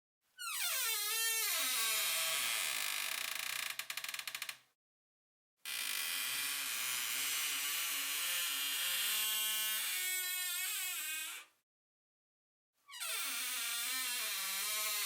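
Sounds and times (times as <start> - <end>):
squeaky door hinge creaking: 5.7 - 11.5, 12.9 - 15.0.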